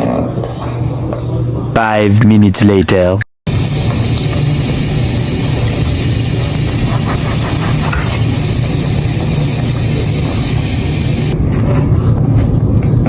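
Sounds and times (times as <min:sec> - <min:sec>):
running water splashing: 0:03.5 - 0:11.4.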